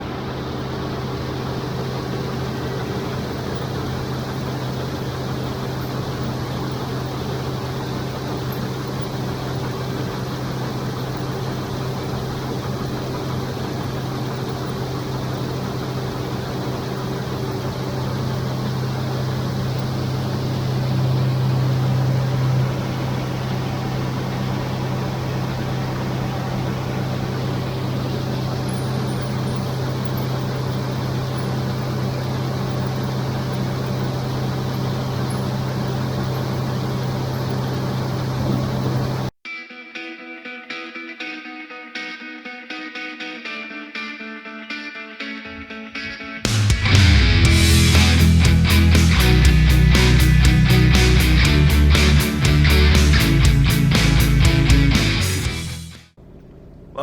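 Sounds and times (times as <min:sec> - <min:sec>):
engine droning: 0:00.0 - 0:39.4, 0:45.4 - 0:57.0.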